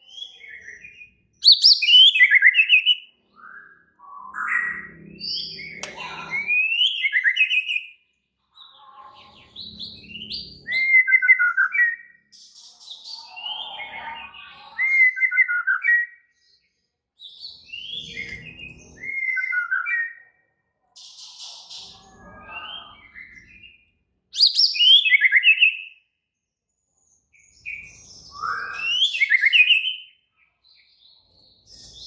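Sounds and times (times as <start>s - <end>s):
bird singing whistles and chirps: 0.0s - 8.0s, 9.7s - 12.4s, 13.3s - 16.6s, 17.2s - 20.2s, 22.2s - 26.0s, 27.4s - 30.2s.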